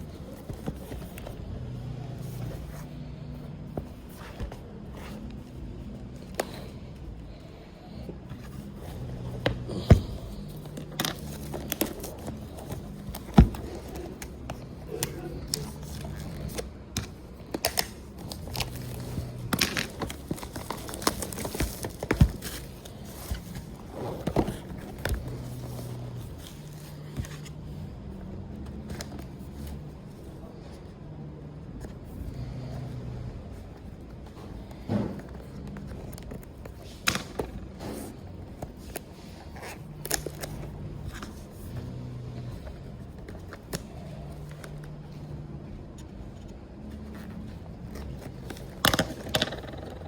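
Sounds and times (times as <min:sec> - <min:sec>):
plastic crinkling: 0:08.6 - 0:27.4.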